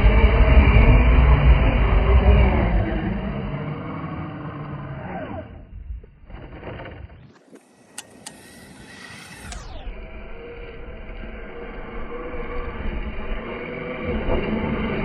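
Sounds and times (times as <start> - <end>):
toy truck motor driving through snow: 6.3 - 15.0
sharp clicks: 7.3 - 9.8.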